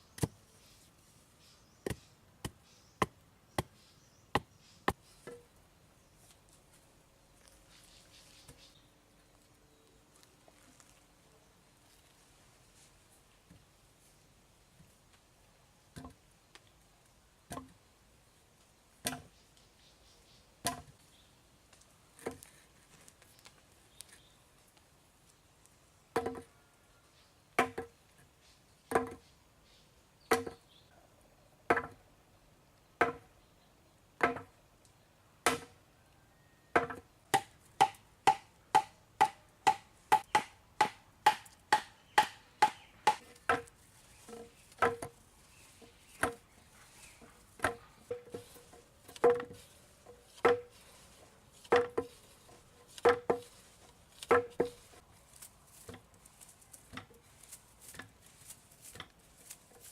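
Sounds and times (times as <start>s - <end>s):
chopping wood: 19.0s - 19.3s, 20.6s - 20.9s, 27.6s - 27.9s, 28.9s - 29.2s, 30.3s - 30.6s, 31.7s - 32.0s, 33.0s - 33.2s, 34.2s - 34.5s, 35.4s - 35.8s, 36.8s - 43.7s, 44.7s - 45.2s, 46.2s - 46.4s, 50.4s - 50.8s, 51.6s - 52.2s, 53.0s - 53.5s, 54.2s - 54.9s.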